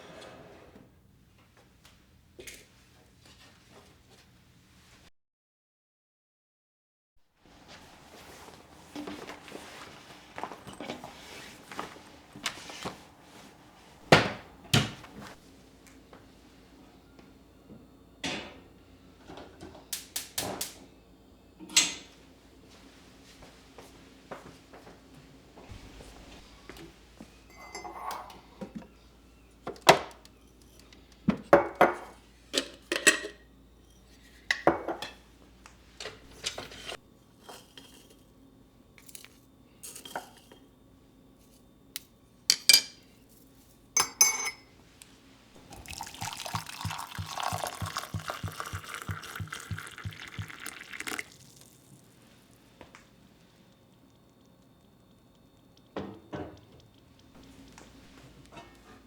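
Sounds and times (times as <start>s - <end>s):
household items clinking: 45.6s - 52.0s.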